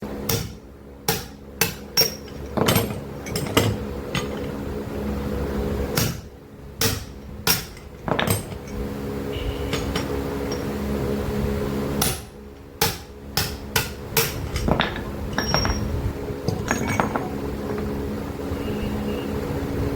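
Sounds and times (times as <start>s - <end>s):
steady machine hum: 0.0s - 19.9s
hammer blows: 9.4s - 10.8s.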